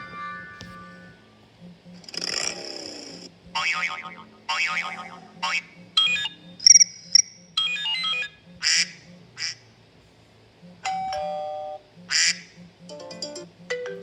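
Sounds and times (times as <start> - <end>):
short noisy squawks: 0.0 - 9.8, 11.7 - 12.8
low pulsing beat: 11.9 - 13.8.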